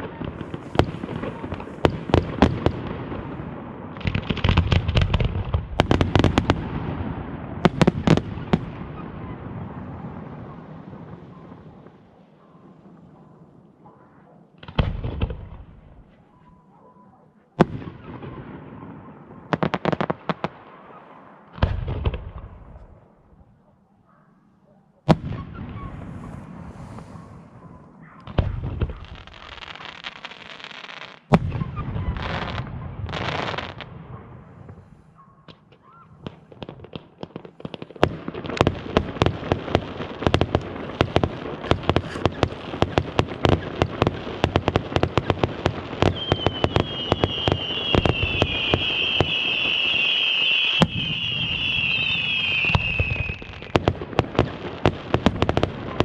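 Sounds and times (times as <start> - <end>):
fireworks bangs: 0.0 - 16.6, 17.6 - 23.4, 25.0 - 56.0
fireworks hissing rushes: 25.9 - 27.5
rapid crackling of small pops: 40.1 - 45.8.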